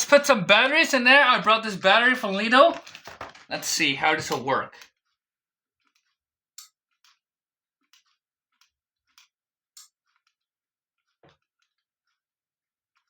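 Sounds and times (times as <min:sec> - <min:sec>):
small plastic parts clicking: 0:05.8 - 0:07.2.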